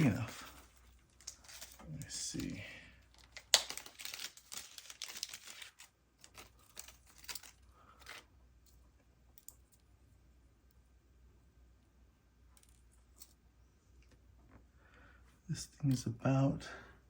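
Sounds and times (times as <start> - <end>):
rustling: 0.0 - 8.8
small parts clicking: 6.2 - 9.9.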